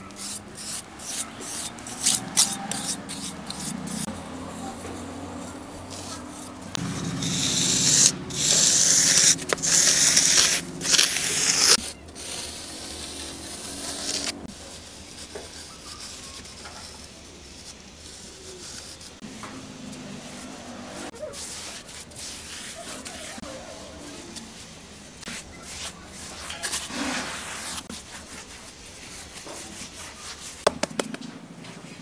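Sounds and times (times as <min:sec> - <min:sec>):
scraping against hard surface: 0:00.2 - 0:14.5, 0:25.2 - 0:28.6.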